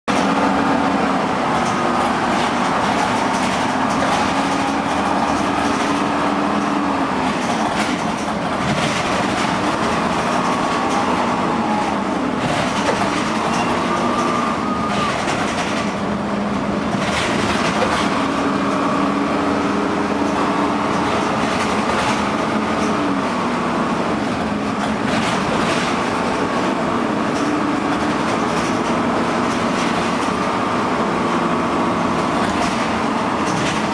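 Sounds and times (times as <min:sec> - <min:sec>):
bus engine cooling fan: 0:00.1 - 0:33.9.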